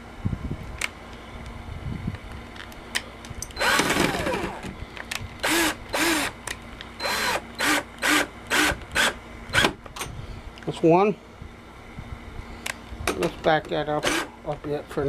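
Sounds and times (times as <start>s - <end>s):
power drill driving screws: 3.6s - 4.7s, 5.4s - 6.4s, 7.0s - 9.7s, 14.0s - 14.3s.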